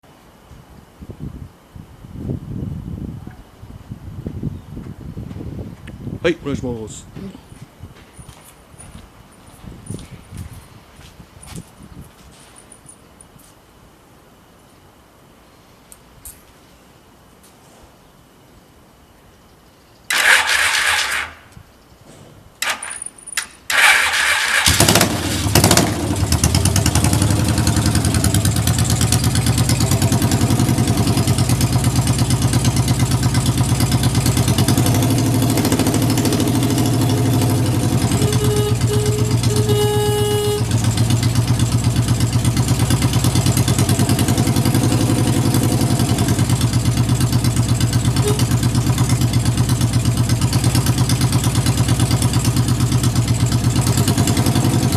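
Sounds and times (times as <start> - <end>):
motorcycle engine starting and idling: 20.1 - 21.5, 22.6 - 54.9
short beeping tone: 37.0 - 40.8, 48.2 - 48.7.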